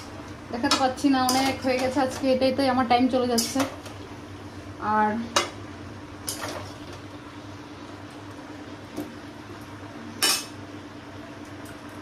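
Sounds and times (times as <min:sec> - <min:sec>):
metal spatula clanking on pan: 0:00.6 - 0:02.2, 0:03.3 - 0:03.8.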